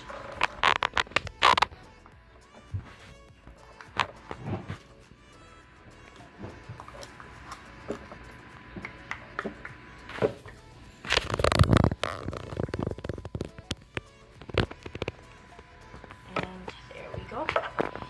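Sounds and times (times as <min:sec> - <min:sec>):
background music: 0:00.0 - 0:18.0.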